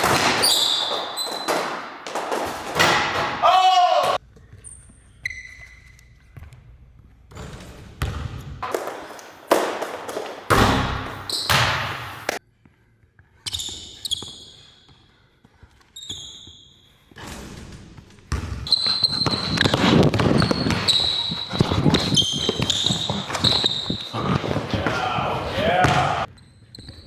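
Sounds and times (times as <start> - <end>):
sneakers squeaking on floor: 0.0 - 3.3, 4.0 - 12.4, 13.4 - 27.0
basketball bouncing on a court: 7.4 - 12.4, 18.2 - 27.0.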